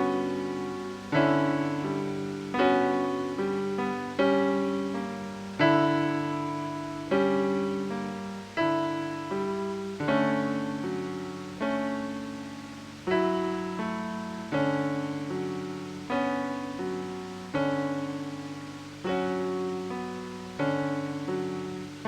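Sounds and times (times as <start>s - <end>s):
slow ambient piano music: 0.0s - 22.0s.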